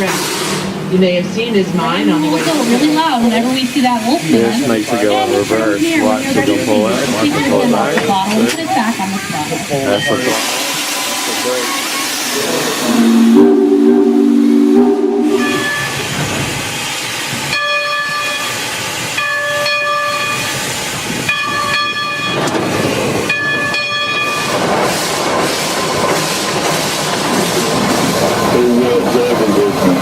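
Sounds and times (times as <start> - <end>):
hiss of escaping steam: 0.0 - 0.9, 2.2 - 17.5, 24.4 - 30.0
steam locomotive whistle blowing: 9.9 - 16.2.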